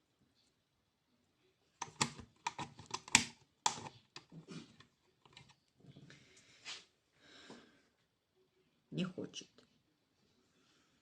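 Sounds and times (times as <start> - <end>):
sharp clicks and clatter: 1.8 - 5.5.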